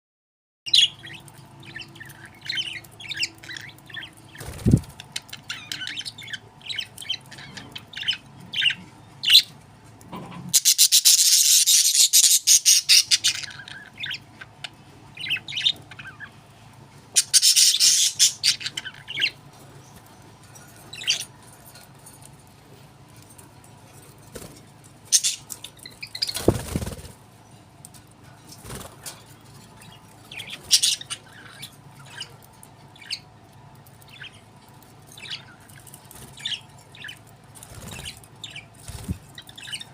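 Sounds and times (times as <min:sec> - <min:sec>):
budgerigars chirping: 0:10.6 - 0:14.3, 0:17.1 - 0:19.4, 0:25.1 - 0:27.1, 0:29.9 - 0:32.3.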